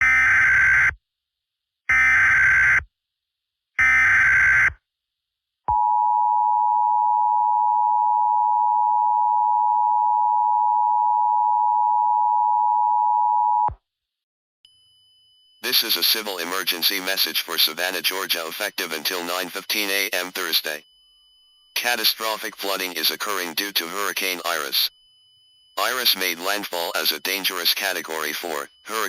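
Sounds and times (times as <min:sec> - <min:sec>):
digital data screech bursts: 0:15.6 - 0:20.9, 0:21.7 - 0:25.0, 0:25.8 - 0:29.0.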